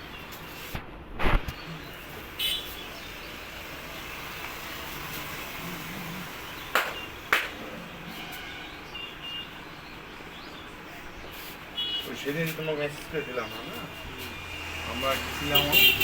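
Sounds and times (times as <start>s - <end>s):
hands smacking head: 6.7s - 7.6s.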